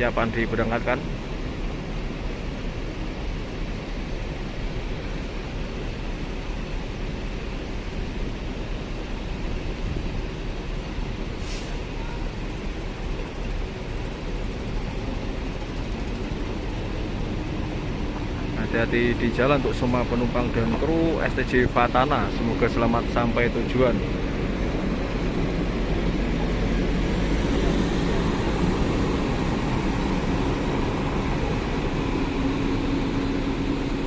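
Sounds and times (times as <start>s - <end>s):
diesel bus engine rumbling: 0.0s - 34.0s
air release hiss: 11.3s - 11.9s.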